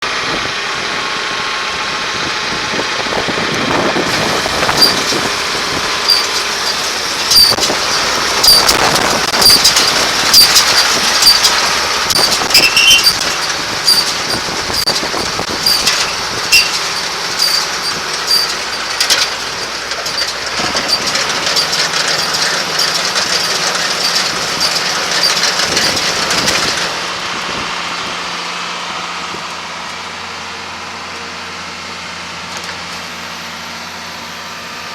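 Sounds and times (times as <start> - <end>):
baler mechanical rumble and hiss: 0.1 - 34.9.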